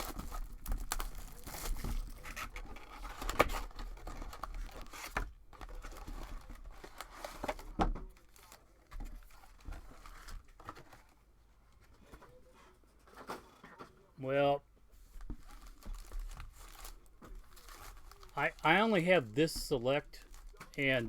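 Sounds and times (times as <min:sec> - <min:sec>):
packaging tearing and rustling: 0:00.0 - 0:11.1, 0:15.3 - 0:19.0, 0:20.2 - 0:21.0.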